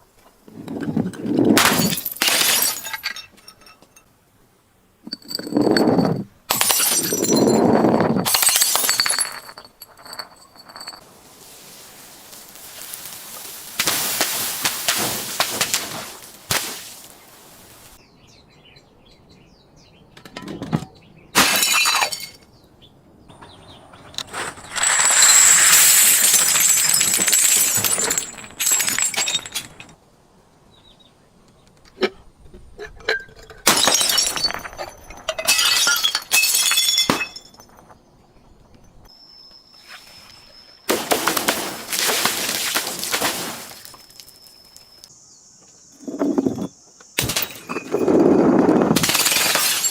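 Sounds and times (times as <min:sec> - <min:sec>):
glass bottles shattering: 0:01.6 - 0:04.1, 0:05.1 - 0:17.2, 0:21.4 - 0:22.4, 0:24.6 - 0:30.0, 0:33.0 - 0:37.8, 0:40.9 - 0:45.1, 0:47.2 - 0:48.2, 0:48.8 - 0:49.9.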